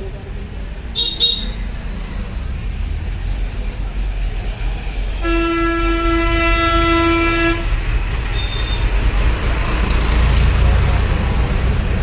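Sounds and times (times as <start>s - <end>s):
low rumble of traffic: 0.0s - 12.0s
vehicle horn blast: 1.0s - 1.6s, 5.2s - 7.7s.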